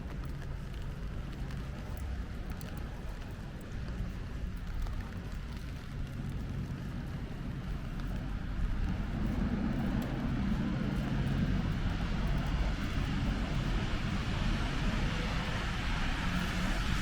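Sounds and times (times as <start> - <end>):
road traffic rumble: 0.0 - 17.0
tyre hiss on wet road: 13.6 - 17.0.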